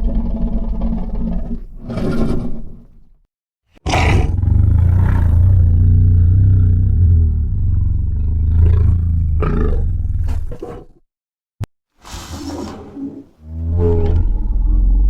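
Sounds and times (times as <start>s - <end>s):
monster roar: 3.8s - 10.2s.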